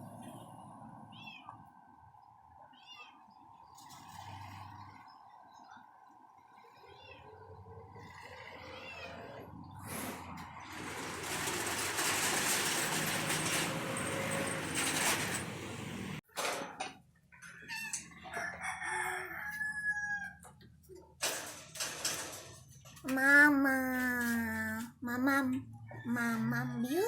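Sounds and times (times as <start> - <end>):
rooster crowing: 17.7 - 20.4, 26.0 - 27.0.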